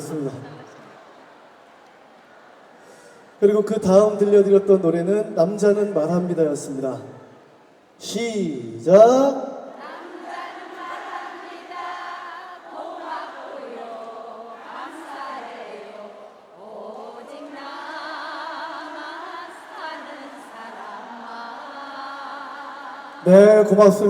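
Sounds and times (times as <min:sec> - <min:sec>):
crowd singing in unison: 0:00.0 - 0:03.4, 0:09.5 - 0:24.0.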